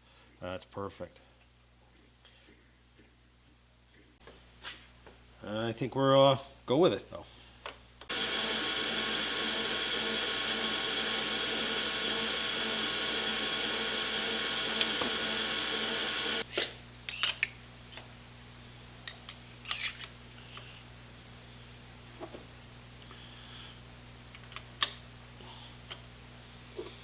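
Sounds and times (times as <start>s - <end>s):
electric motor running: 8.1s - 16.4s
metallic clinks of tools: 17.1s - 17.5s.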